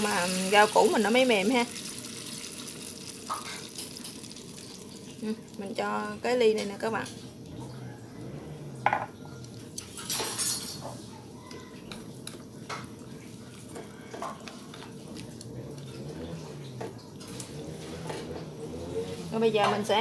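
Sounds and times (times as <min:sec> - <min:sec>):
water pouring into pot: 0:00.0 - 0:05.8
utensils clinking on pot: 0:09.8 - 0:11.0.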